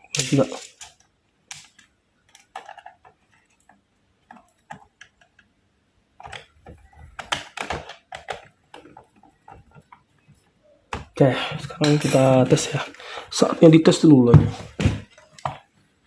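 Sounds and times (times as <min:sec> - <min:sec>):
plastic clicks and taps of laptop: 0:00.8 - 0:05.5, 0:06.2 - 0:10.1.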